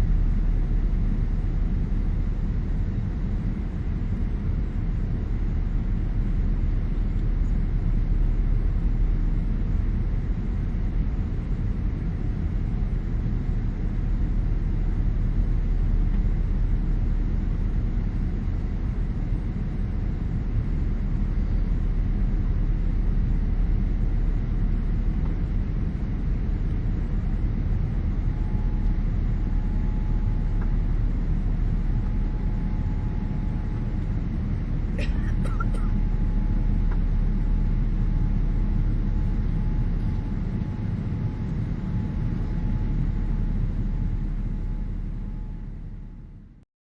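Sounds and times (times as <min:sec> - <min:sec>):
airliner cabin engine rumble: 0:00.0 - 0:46.6
faint steady tone: 0:04.1 - 0:46.4.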